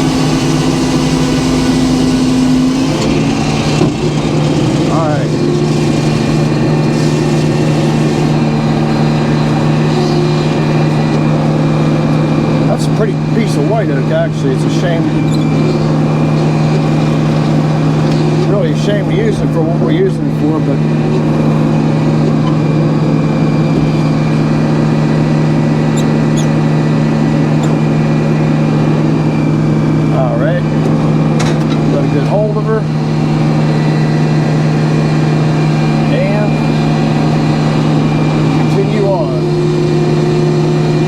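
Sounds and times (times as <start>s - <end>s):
sawmill engine running: 0.0s - 41.0s
short high squeaks: 0.3s - 11.2s, 15.0s - 18.5s, 25.8s - 27.9s.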